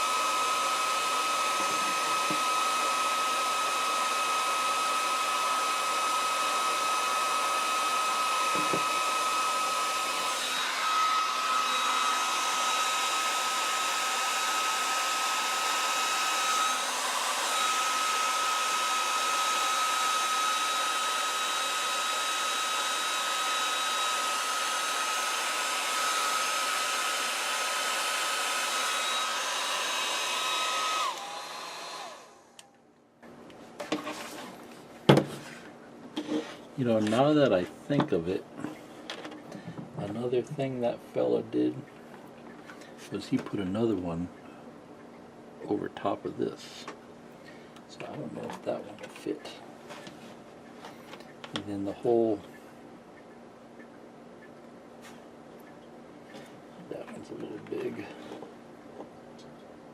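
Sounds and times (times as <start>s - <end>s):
heat gun motor whine: 0.0s - 32.8s.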